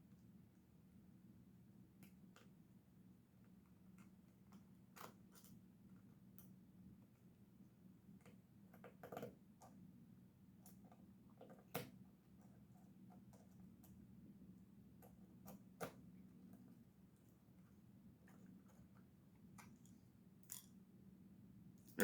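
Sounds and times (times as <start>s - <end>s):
small clicks and taps of tools: 8.2s - 9.8s.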